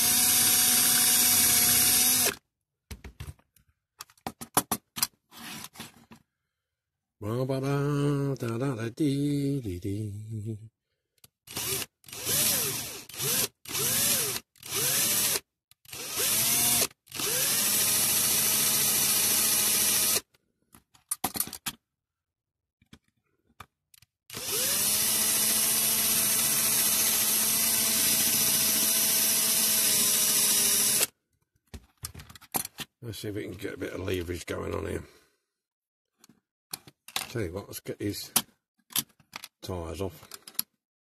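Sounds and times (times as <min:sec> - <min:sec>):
electric drill drilling: 0:00.0 - 0:02.4, 0:11.5 - 0:20.2, 0:24.3 - 0:31.1.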